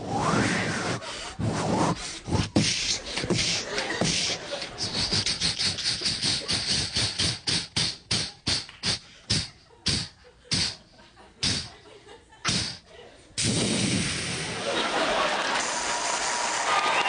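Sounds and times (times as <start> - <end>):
vocal imitation of steam train: 0.8 - 11.7
audience applause: 14.5 - 17.0.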